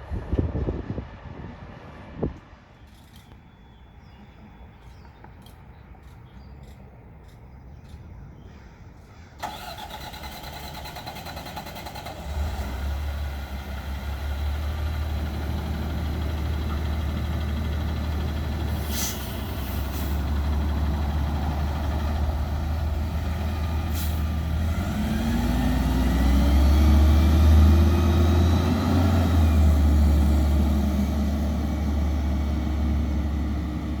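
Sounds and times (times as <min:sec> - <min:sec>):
diesel engine rumbling and revving: 0:09.4 - 0:34.0
short air hisses: 0:18.7 - 0:20.3, 0:23.9 - 0:24.3.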